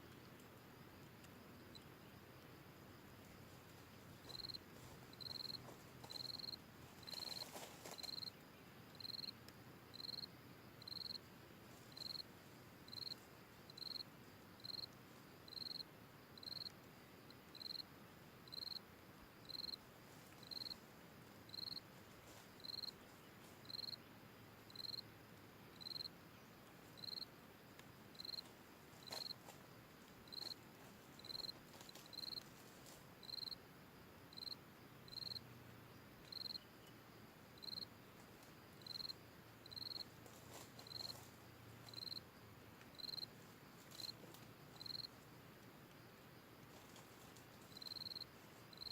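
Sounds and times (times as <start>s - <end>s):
insect chirping: 0.0s - 48.9s.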